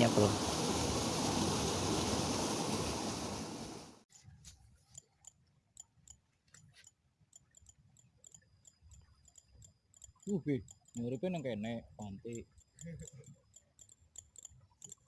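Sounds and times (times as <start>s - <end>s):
loud rushing hiss: 0.0s - 4.0s
faint sharp high clicks: 4.9s - 11.2s, 12.2s - 15.0s.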